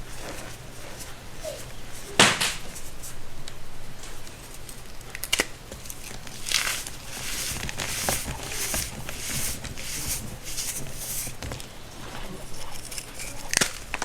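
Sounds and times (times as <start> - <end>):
baking soda crunching: 4.0 - 14.0
sharp crackles: 4.0 - 14.0.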